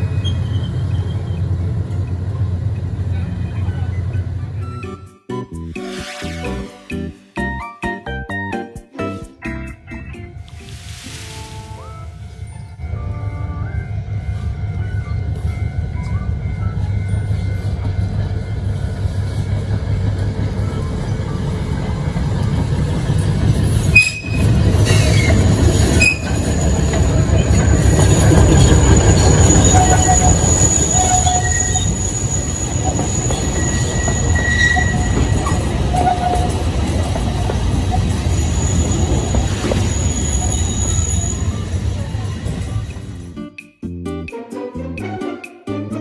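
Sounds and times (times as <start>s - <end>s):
wheels squealing on track: 0.0s - 1.7s, 23.6s - 43.3s
train wheels rumbling: 9.6s - 43.4s.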